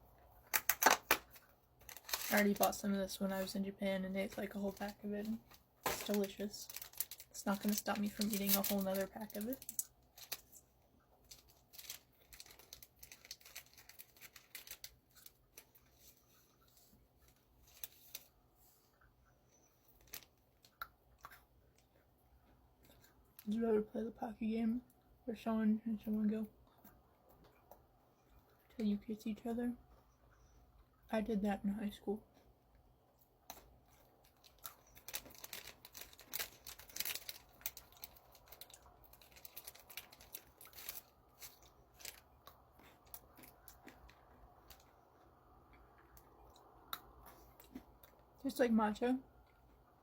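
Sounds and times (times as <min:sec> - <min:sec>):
snack packaging crinkling: 0:00.5 - 0:03.5, 0:04.3 - 0:16.4, 0:19.9 - 0:21.4, 0:33.5 - 0:45.0.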